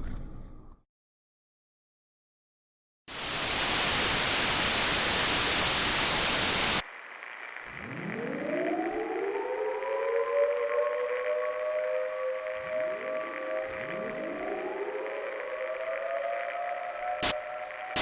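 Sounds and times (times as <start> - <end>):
static hiss burst: 3.1 - 9.0, 17.2 - 18.0
civil defense siren winding up: 7.7 - 18.0.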